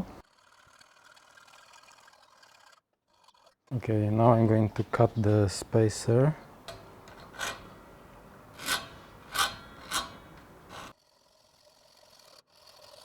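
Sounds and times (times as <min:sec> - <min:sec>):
hand saw cutting metal: 0:03.8 - 0:10.9.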